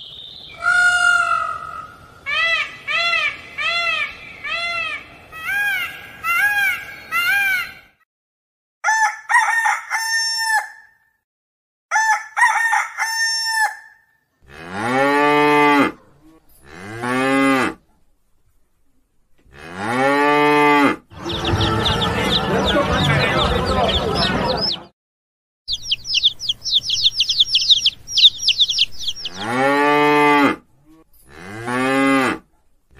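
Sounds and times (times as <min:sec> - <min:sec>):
rooster crowing: 0:08.8 - 0:11.0, 0:11.9 - 0:14.0
cow mooing: 0:14.4 - 0:17.8, 0:19.5 - 0:21.0, 0:29.2 - 0:32.5.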